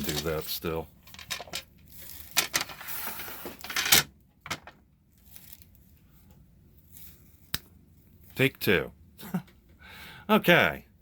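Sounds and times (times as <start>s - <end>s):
rustling: 4.6s - 8.4s.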